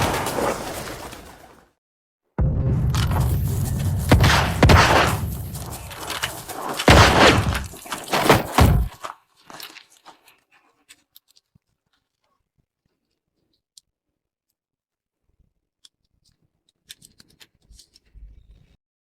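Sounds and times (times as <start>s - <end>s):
low rumble: 2.4s - 6.0s
heavy gun blasts: 2.4s - 9.0s.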